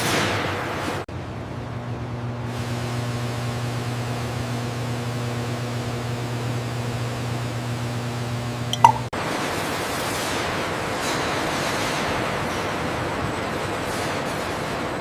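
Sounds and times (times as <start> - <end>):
factory machinery hum: 0.0 - 15.0
short high blip: 8.8 - 9.1.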